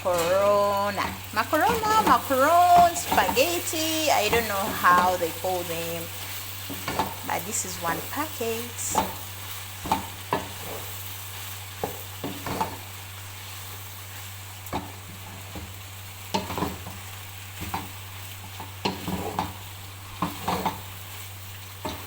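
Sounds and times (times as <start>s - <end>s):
spoon scraping and knocking pan: 6.2s - 7.3s, 8.8s - 11.1s, 11.7s - 12.9s, 14.7s - 17.0s, 17.6s - 19.6s, 20.2s - 20.9s.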